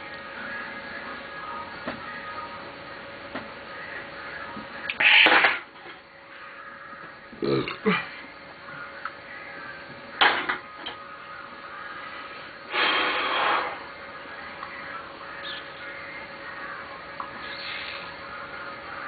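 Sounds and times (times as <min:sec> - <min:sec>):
person burping: 0:07.4 - 0:08.1.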